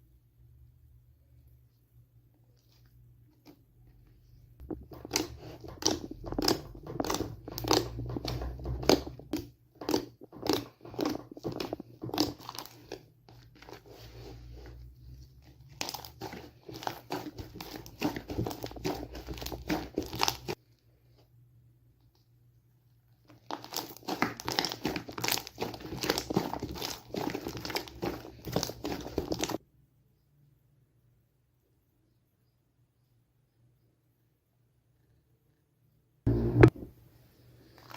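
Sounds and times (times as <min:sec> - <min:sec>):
slime squished by hand: 0:04.6 - 0:20.6, 0:23.4 - 0:29.6.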